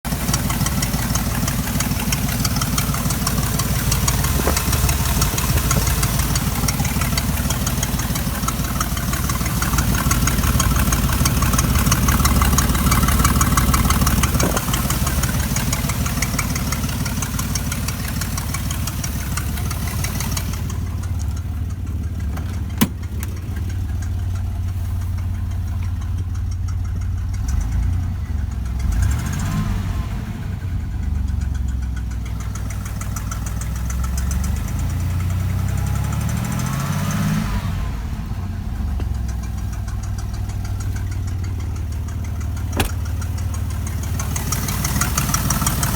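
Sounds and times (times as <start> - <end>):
car engine idling: 0.0 - 45.9
rapid engine ticking: 0.0 - 45.9.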